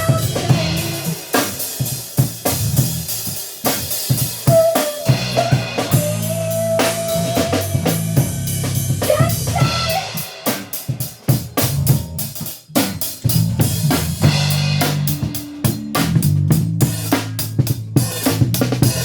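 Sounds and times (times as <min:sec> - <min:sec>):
guitar: 0:00.0 - 0:01.5, 0:04.5 - 0:11.9
drum kit beat: 0:00.0 - 0:19.0
held low bass notes: 0:05.1 - 0:10.0, 0:11.5 - 0:19.0.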